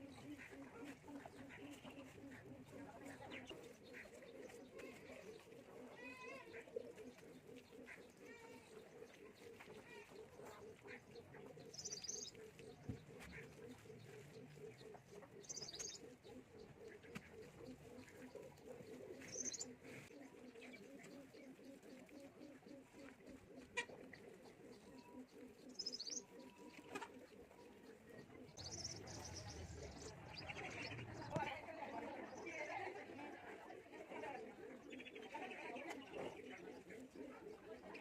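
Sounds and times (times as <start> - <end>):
doves cooing: 0.0 - 38.0
high bird chirp: 28.6 - 31.4.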